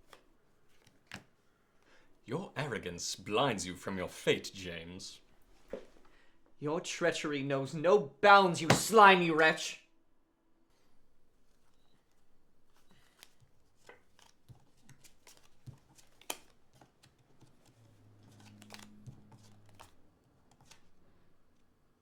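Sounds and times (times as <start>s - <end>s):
playing cards clicking and tapping: 8.6s - 9.6s, 12.7s - 21.0s.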